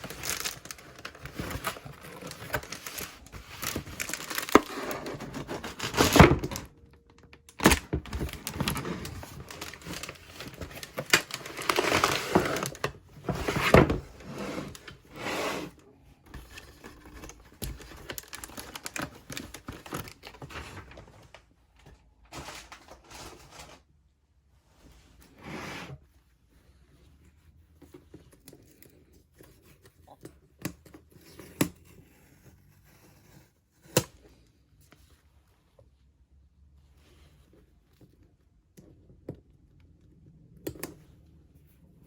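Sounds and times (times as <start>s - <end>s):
packaging crinkling: 0.0s - 14.0s, 16.6s - 21.4s.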